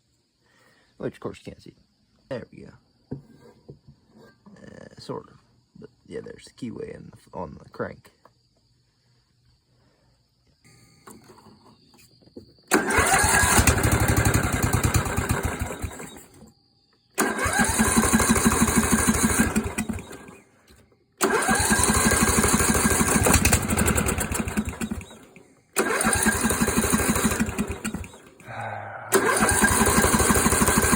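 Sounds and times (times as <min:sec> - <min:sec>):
engine starter cranking: 0:12.7 - 0:16.4, 0:17.2 - 0:28.5, 0:29.1 - 0:30.9.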